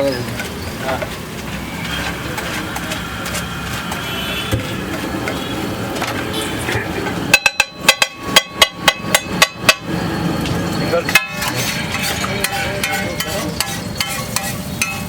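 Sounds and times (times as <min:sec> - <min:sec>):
street stall background noise: 0:00.0 - 0:15.0
ringing metal strikes: 0:07.3 - 0:15.0.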